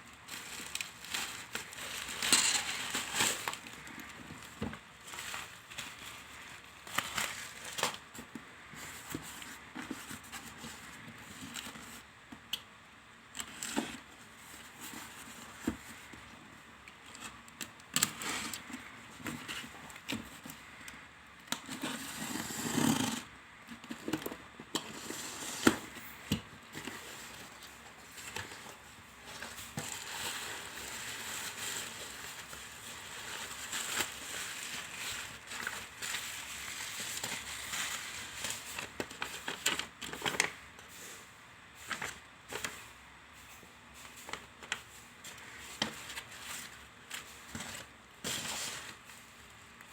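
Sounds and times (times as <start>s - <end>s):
plastic wrap crinkling: 0.0s - 8.4s, 24.0s - 40.7s.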